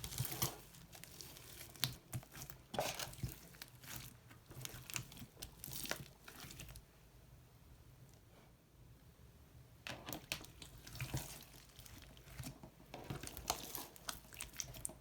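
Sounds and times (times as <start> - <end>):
slime crackling and popping: 10.3 - 15.0.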